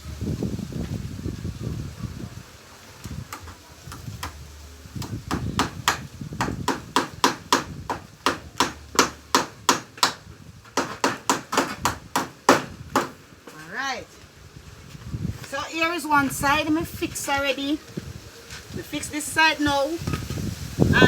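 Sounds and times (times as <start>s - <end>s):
hammer driving nails into wood: 5.0s - 10.2s, 10.8s - 13.2s.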